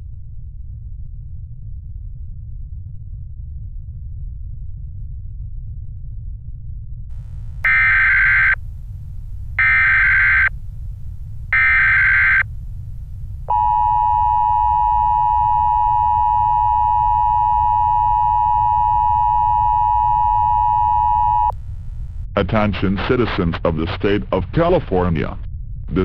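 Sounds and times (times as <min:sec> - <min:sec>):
low rumble: 0:00.0 - 0:26.0
data tone bursts: 0:07.6 - 0:08.6, 0:09.6 - 0:10.5, 0:11.6 - 0:12.4, 0:13.5 - 0:21.5
two-tone attention signal: 0:07.7 - 0:08.6, 0:09.6 - 0:10.5, 0:11.6 - 0:12.4, 0:13.5 - 0:21.5.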